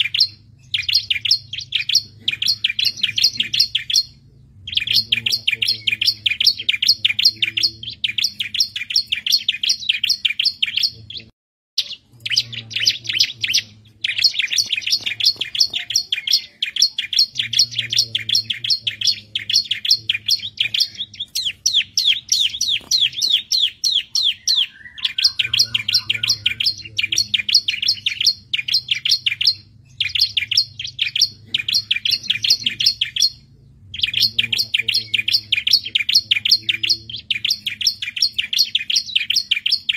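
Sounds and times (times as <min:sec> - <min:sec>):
bird singing high chirps: 0:00.0 - 0:39.9
faint low hum: 0:00.0 - 0:39.9.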